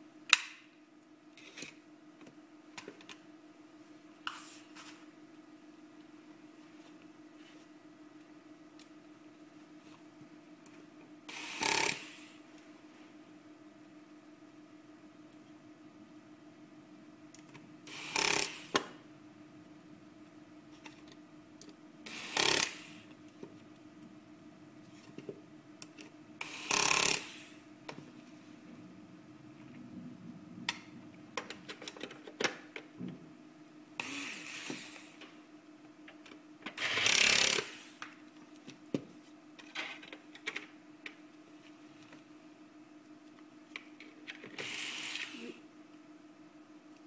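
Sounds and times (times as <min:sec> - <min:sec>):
steady low hum: 0:00.0 - 0:47.0
electric screwdriver driving screws: 0:11.3 - 0:12.2, 0:17.9 - 0:18.8, 0:22.1 - 0:23.0, 0:26.4 - 0:27.5, 0:36.8 - 0:37.9, 0:44.6 - 0:45.4
clicks and knocks of parts: 0:31.4 - 0:32.9.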